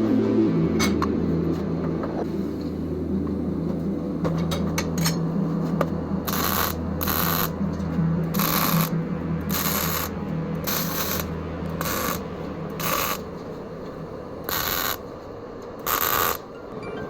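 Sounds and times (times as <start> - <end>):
steady low hum: 0.0 - 16.9.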